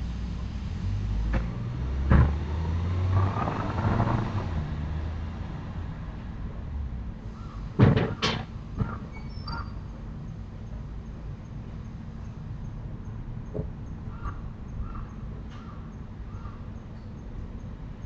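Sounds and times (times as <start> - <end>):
passing vehicle rumble: 0.0 - 9.0
sharp knocks: 7.8 - 9.0.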